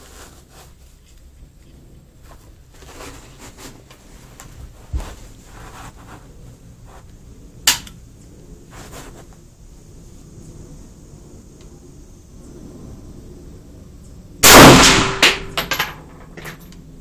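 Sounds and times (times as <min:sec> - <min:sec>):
rifle shots: 0:14.4 - 0:15.6.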